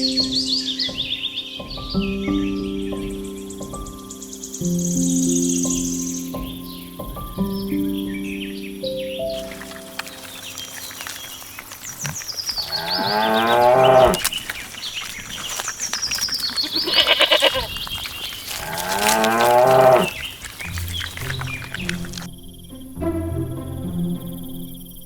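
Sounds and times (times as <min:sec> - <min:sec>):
high falling chirps: 0:09.2 - 0:22.3
cow mooing: 0:12.6 - 0:14.2, 0:18.6 - 0:20.1.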